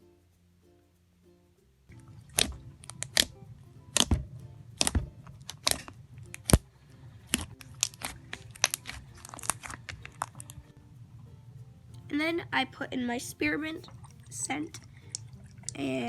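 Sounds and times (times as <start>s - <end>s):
slime clicking and popping: 2.3s - 4.2s, 4.8s - 6.7s, 7.3s - 10.6s.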